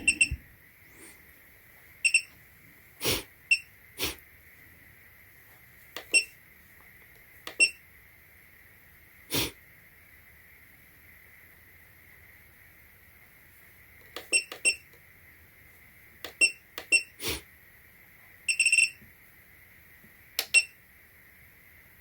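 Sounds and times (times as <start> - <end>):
short electronic beeps: 0.0 - 0.4.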